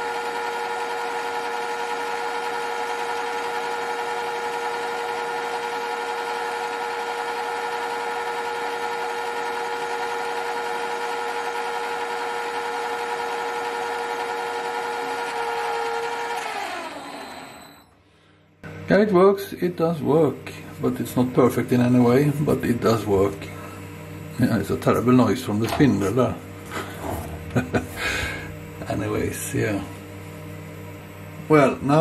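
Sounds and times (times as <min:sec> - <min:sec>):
lathe spindle whining: 0:00.0 - 0:18.0.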